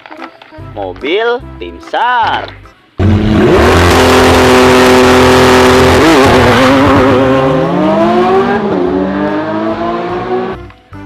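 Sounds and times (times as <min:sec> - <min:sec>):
car engine revving: 0:03.0 - 0:10.6.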